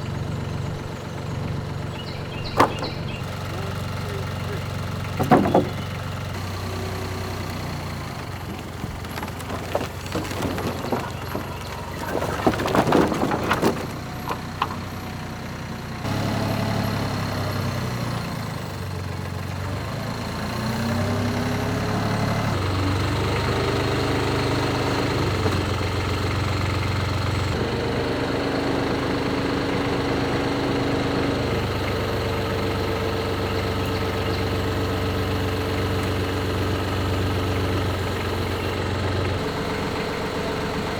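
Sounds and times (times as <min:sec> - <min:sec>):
engine running: 0:00.0 - 0:40.9
metal clanks and knocks: 0:02.0 - 0:06.5, 0:07.6 - 0:15.3.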